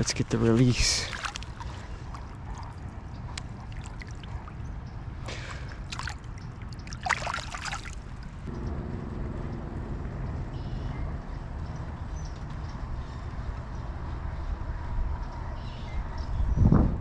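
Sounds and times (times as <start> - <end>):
water splashing: 0.0 - 4.6, 5.2 - 8.5
wind on microphone: 12.8 - 17.0.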